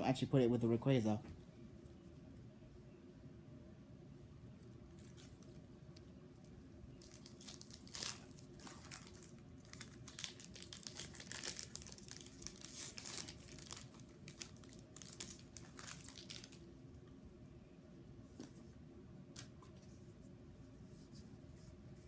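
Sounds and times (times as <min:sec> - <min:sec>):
foil wrapper crinkling and tearing: 0:07.0 - 0:16.6.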